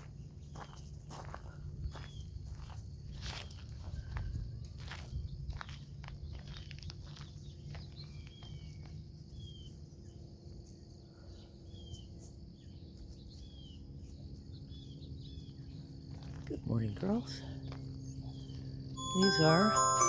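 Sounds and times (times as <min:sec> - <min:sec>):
bird chirping: 0:06.2 - 0:10.2, 0:11.3 - 0:16.4.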